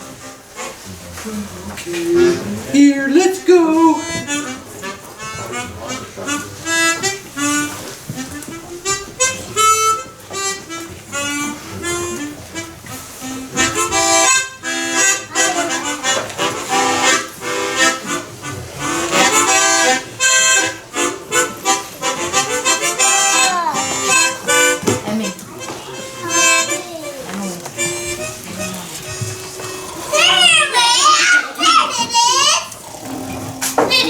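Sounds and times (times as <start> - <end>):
harmonica music: 0.0 - 34.0.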